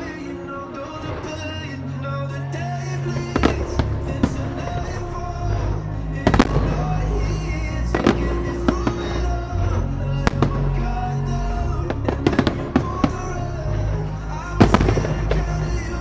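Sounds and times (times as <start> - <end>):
loud music with bass line: 2.7 - 16.0
fireworks bangs: 3.4 - 5.0, 6.3 - 7.4, 14.6 - 15.8.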